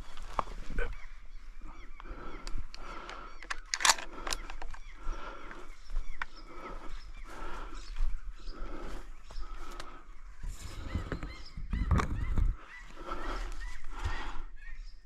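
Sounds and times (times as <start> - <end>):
sharp clicks: 2.0 - 6.5.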